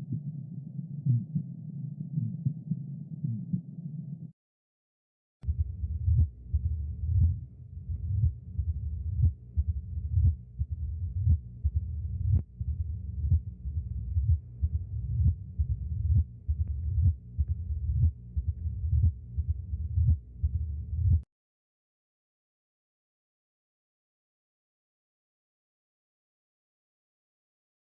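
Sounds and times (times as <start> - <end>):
low continuous heart murmur: 0.0 - 3.7, 5.4 - 21.3
heartbeat through stethoscope: 5.4 - 21.3.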